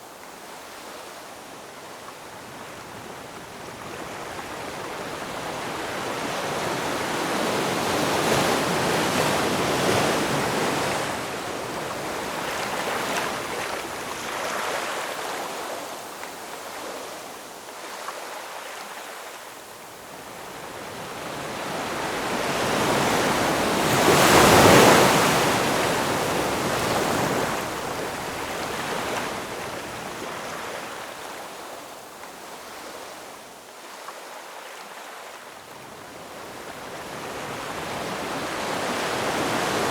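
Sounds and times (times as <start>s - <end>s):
ocean waves surging: 21.8s - 29.5s.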